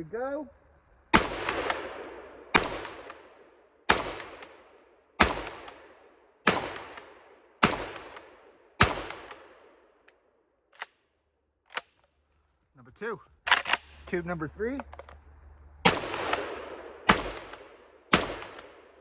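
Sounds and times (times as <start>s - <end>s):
shotgun shots with echo: 1.1s - 9.7s, 15.8s - 19.0s.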